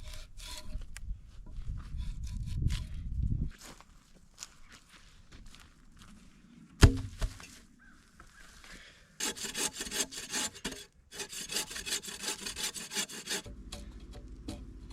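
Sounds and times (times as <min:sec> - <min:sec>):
hand saw cutting wood: 0:09.2 - 0:14.9.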